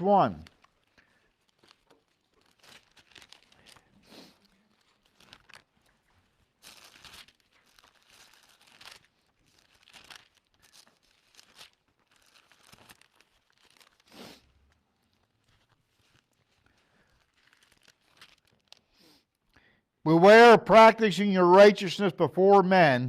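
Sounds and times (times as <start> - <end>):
pages being turned: 0.5 - 3.8, 4.7 - 18.9.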